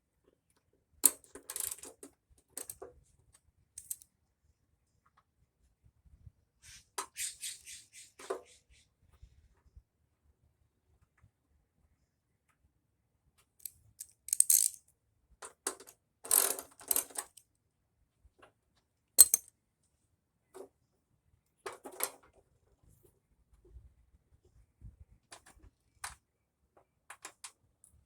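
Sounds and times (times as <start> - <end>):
metal parts clinking and rattling: 1.0 - 2.0, 3.8 - 4.0, 14.0 - 14.8, 16.3 - 17.3, 19.2 - 19.5.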